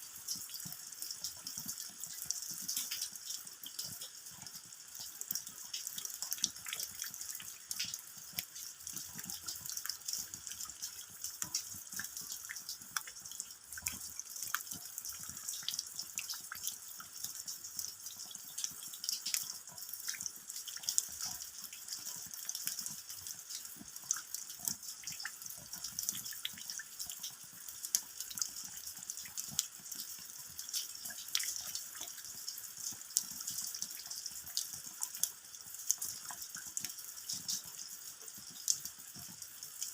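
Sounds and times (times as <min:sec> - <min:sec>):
rain drops pattering: 0:00.0 - 0:39.9.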